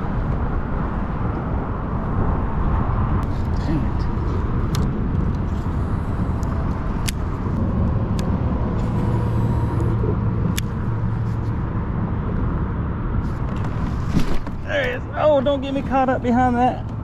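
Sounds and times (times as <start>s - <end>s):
low hum: 0.0s - 17.0s
road traffic rumble: 0.0s - 17.0s
sharp clicks: 6.4s - 9.0s.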